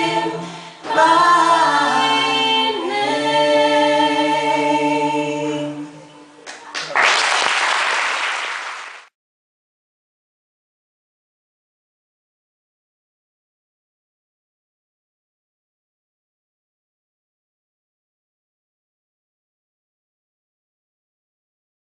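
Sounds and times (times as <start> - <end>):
a cappella choir singing: 0.0 - 6.4.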